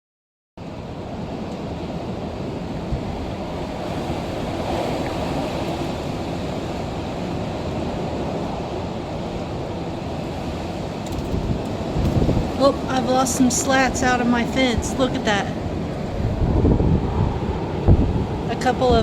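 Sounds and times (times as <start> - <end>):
storm wind buffeting microphone: 0.6 - 19.0.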